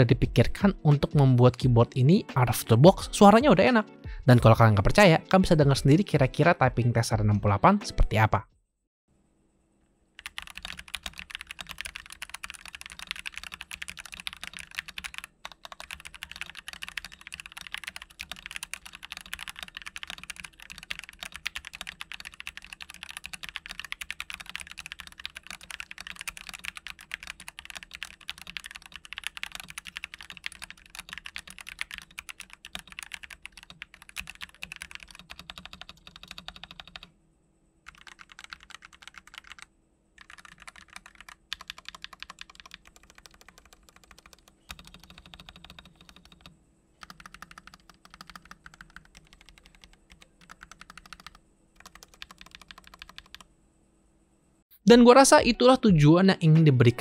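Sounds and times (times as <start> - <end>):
mechanical keyboard keystroke clacks: 37.9 - 53.4.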